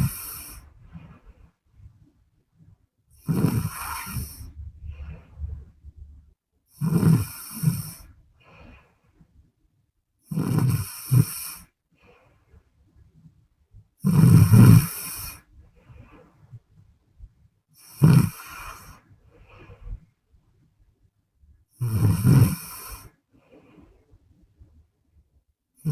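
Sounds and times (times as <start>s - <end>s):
woman snoring: 0.0s - 0.7s, 3.2s - 5.2s, 6.7s - 8.1s, 10.2s - 11.7s, 14.0s - 15.5s, 17.8s - 19.0s, 21.8s - 23.2s
faint breaths: 0.0s - 6.4s, 7.1s - 9.5s, 10.6s - 13.4s, 14.1s - 20.5s, 21.7s - 24.5s.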